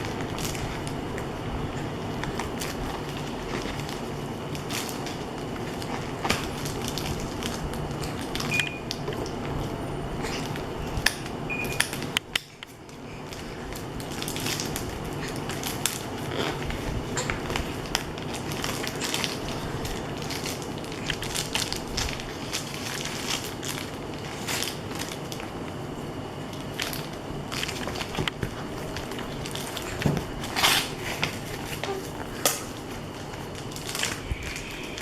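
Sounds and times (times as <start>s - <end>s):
paper envelope crackling and tearing: 26.6s - 35.0s.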